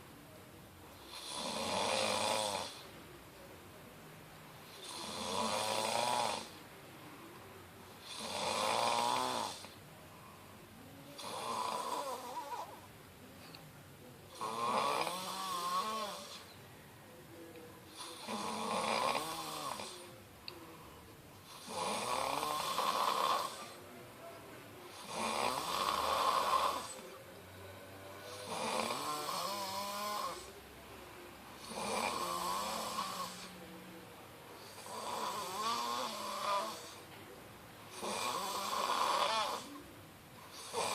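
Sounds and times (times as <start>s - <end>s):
man snoring: 1.0s - 2.9s, 4.6s - 6.6s, 8.0s - 9.7s, 11.2s - 12.8s, 14.3s - 16.5s, 18.0s - 20.2s, 21.5s - 23.8s, 24.9s - 27.2s, 28.0s - 30.6s, 31.6s - 33.6s, 34.6s - 37.0s, 37.9s - 39.8s, 40.5s - 40.9s.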